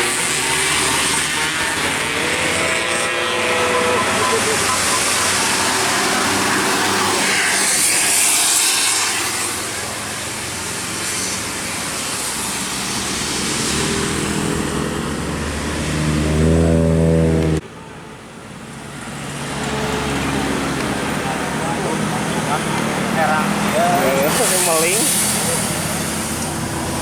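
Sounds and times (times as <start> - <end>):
multi-note air horn: 0.0 - 9.6
hiss: 0.0 - 14.7, 22.5 - 27.0
bus passing: 0.0 - 27.0.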